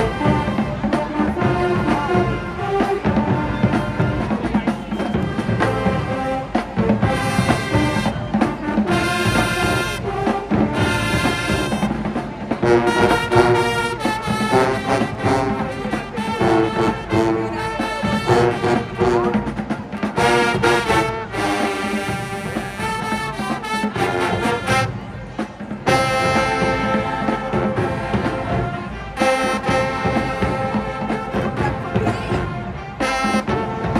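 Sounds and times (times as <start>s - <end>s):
drums beating: 0.0s - 33.9s
marching band playing: 0.0s - 33.9s.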